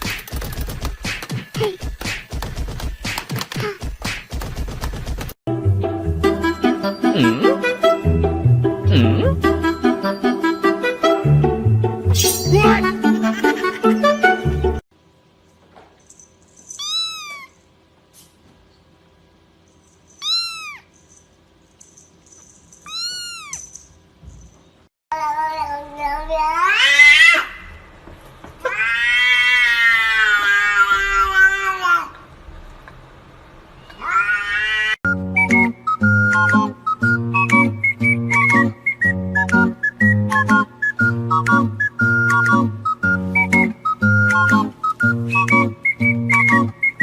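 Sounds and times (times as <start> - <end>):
cat meowing: 16.8 - 17.6, 20.2 - 20.9, 22.9 - 23.6, 34.0 - 35.0
cat yowling: 16.8 - 17.6, 20.2 - 20.9, 22.9 - 23.6, 28.7 - 32.0, 34.0 - 35.0.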